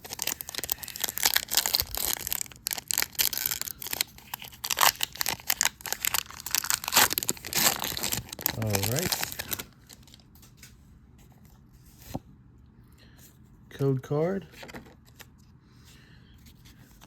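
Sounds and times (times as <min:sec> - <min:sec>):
foil wrapper crinkling and tearing: 0:00.0 - 0:10.6.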